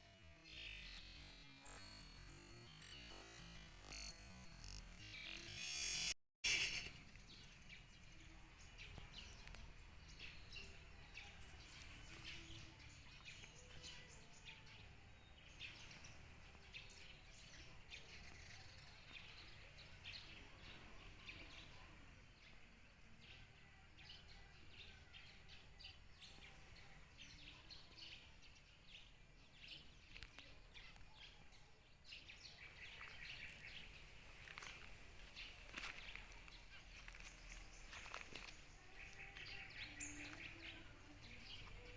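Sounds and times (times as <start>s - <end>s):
bird chirps: 0.0s - 20.3s
faint outdoor background noise: 0.0s - 41.9s.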